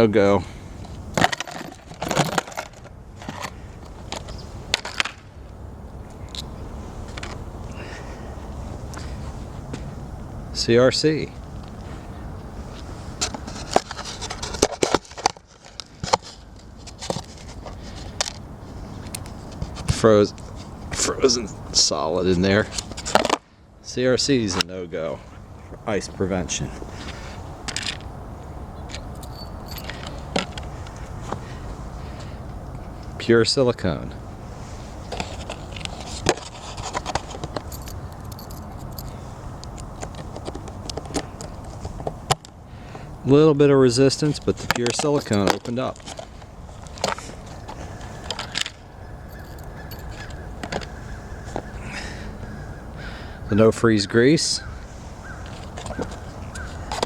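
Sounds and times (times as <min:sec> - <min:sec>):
key clicking and scraping in padlock: 0:01.2 - 0:03.6, 0:29.0 - 0:30.2, 0:35.5 - 0:41.5, 0:48.2 - 0:50.4
metallic clicks of padlock: 0:37.6 - 0:39.9.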